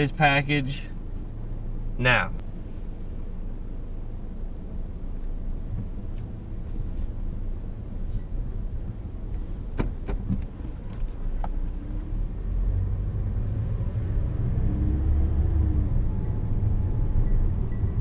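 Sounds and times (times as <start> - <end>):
car engine and road rumble: 0.0 - 18.0.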